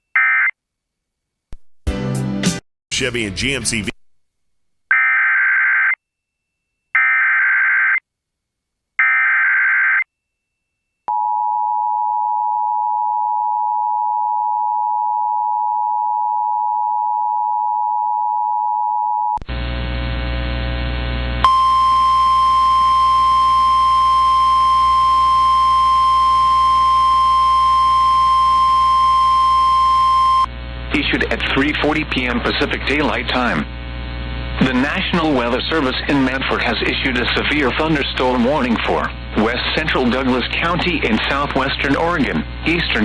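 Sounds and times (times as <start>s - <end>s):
steady alarm tone: 21.5s - 30.5s.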